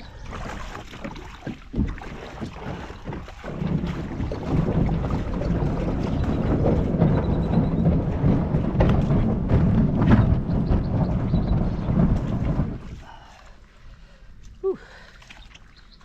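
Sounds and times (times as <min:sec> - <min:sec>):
wind buffeting microphone: 0:00.0 - 0:13.3
irregular knocks: 0:01.4 - 0:12.9.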